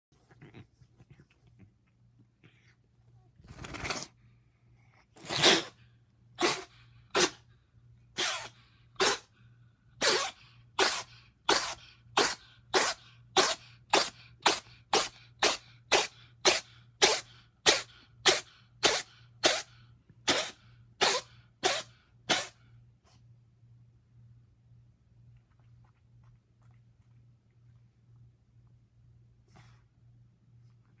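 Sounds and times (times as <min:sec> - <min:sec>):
cat sneezing: 0:03.5 - 0:04.2, 0:05.1 - 0:07.5, 0:08.1 - 0:09.4, 0:10.0 - 0:23.2.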